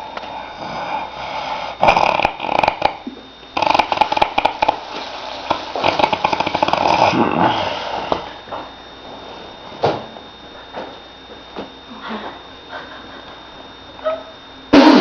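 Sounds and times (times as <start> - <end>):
man snoring heavily: 0.0 - 8.3, 14.7 - 15.0.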